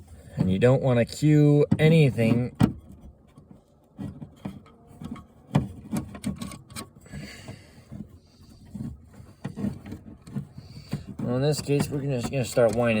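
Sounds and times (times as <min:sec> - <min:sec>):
cable connector clicking and scraping: 0:02.2 - 0:07.2.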